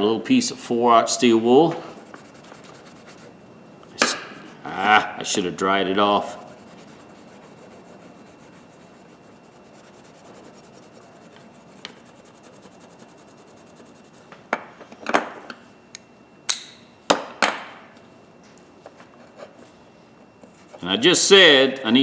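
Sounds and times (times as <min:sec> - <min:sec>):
steel wool rubbing on metal: 0:01.9 - 0:05.1, 0:06.1 - 0:14.2.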